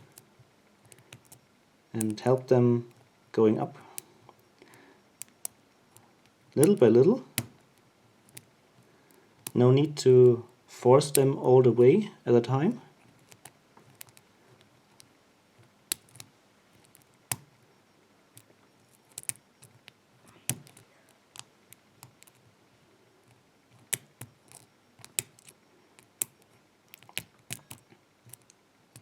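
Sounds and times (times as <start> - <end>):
lock pick metallic clicks: 23.7 - 29.0.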